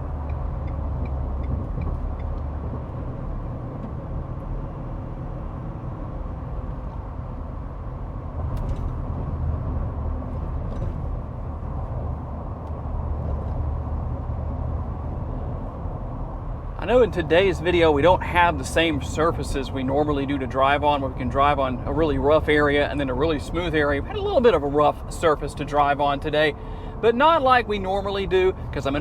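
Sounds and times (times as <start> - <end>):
engine drone: 0.0 - 29.0
tyre and road noise: 0.0 - 29.0.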